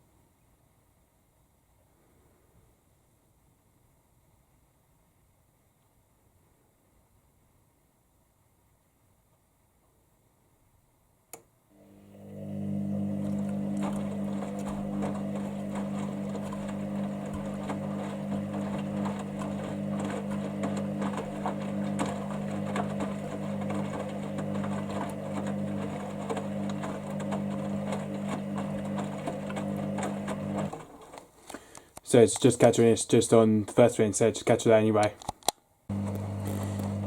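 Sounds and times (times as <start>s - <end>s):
washing machine drain pump humming: 11.8s - 31.3s, 35.9s - 37.0s
water gurgling and rattling: 12.6s - 31.2s.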